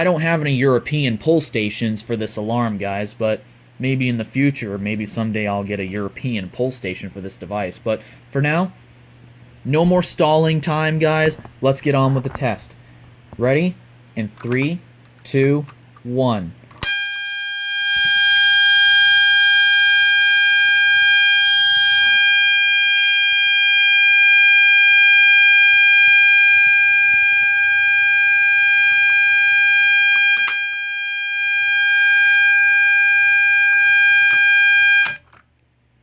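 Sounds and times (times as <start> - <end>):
loud steady alarm tone: 16.8 - 35.2.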